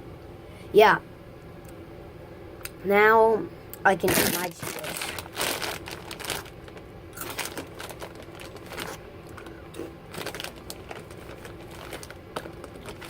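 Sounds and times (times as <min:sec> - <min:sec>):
snack bag crinkling: 0:04.0 - 0:13.0.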